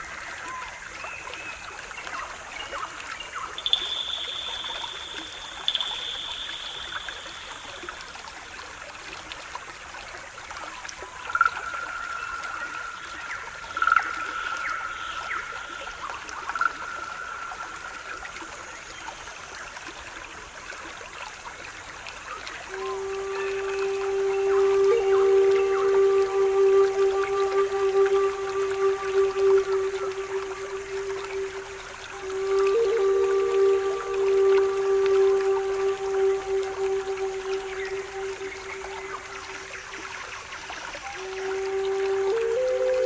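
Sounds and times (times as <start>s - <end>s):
stream trickling: 0.0s - 43.0s
high whistling tones: 3.6s - 8.0s, 22.7s - 40.0s, 41.1s - 43.0s
low flute note: 3.6s - 8.0s, 22.6s - 40.2s, 41.0s - 43.0s.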